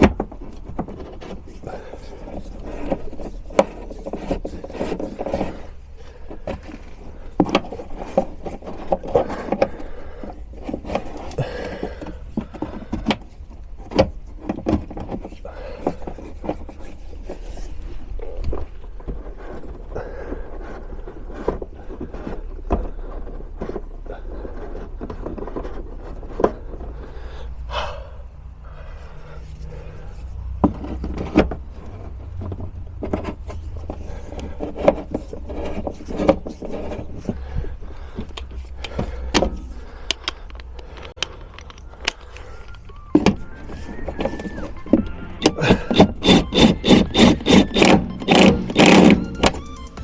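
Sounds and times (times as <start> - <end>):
metallic clinks and scrapes of tools: 28.9 - 50.0.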